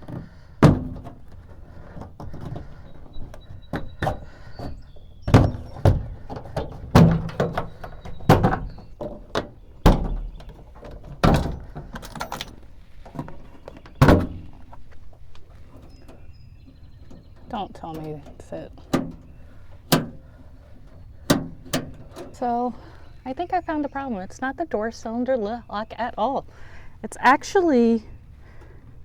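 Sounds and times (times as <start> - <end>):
small knocks: 0.0 - 23.0.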